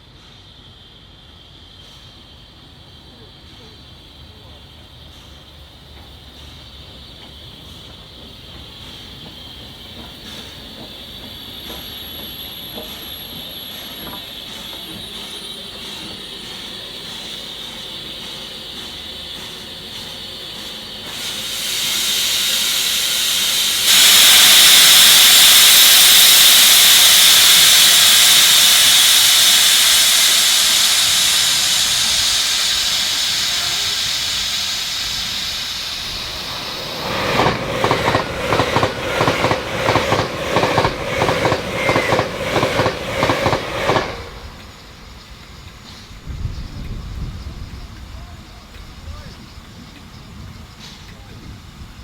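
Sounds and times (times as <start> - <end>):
steam locomotive exhaust beats: 0.0 - 52.0
steam locomotive hissing steam: 0.0 - 52.0.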